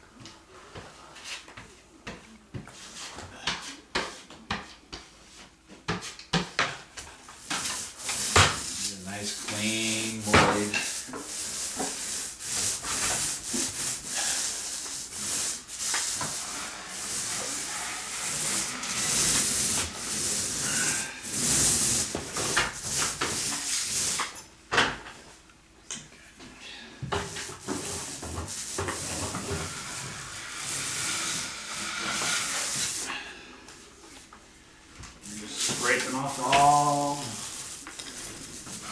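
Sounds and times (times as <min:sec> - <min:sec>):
drywall knife scraping compound: 0:07.4 - 0:24.4, 0:27.2 - 0:33.2, 0:35.3 - 0:38.9.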